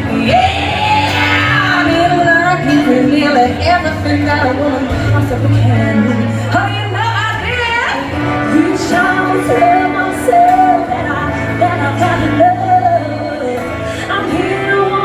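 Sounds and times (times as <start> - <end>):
live country band playing: 0.0 - 15.0
woman singing long notes: 0.0 - 15.0.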